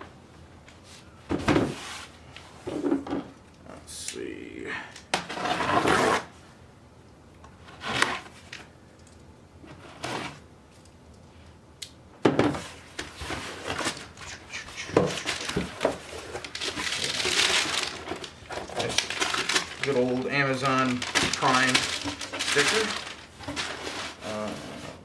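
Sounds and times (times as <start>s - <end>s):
cardboard scraping and rustling: 5.2s - 6.3s, 7.6s - 8.6s, 9.6s - 10.4s, 12.4s - 14.2s, 14.8s - 25.0s.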